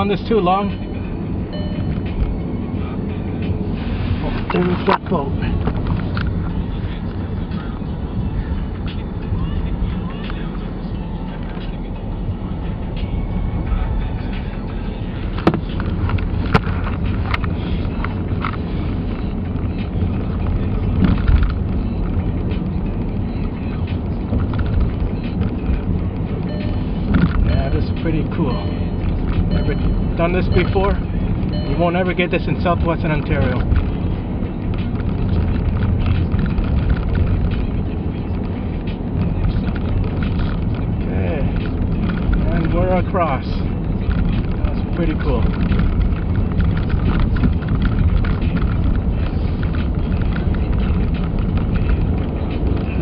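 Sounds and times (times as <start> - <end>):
car engine and tyres rumbling: 0.0 - 53.0
sharp knocks or clicks: 15.4 - 17.5
faint clicks and rattles: 33.2 - 38.6, 44.0 - 53.0.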